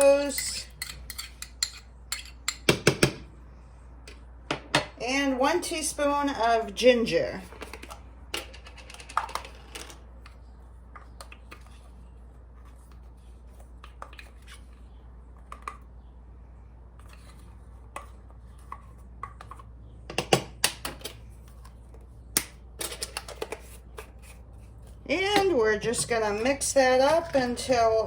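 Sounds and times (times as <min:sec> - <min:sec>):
kitchen utensils clinking: 0:00.0 - 0:02.6.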